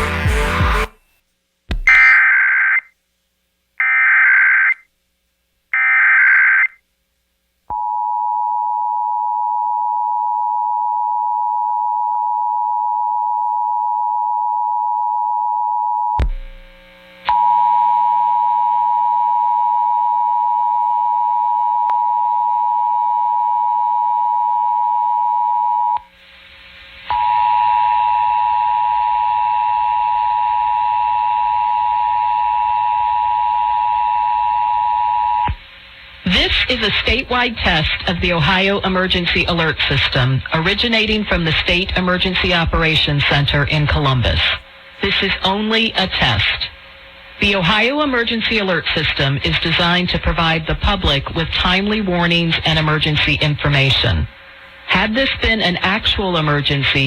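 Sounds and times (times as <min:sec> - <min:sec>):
two-tone alert signal: 0:01.8 - 0:02.4.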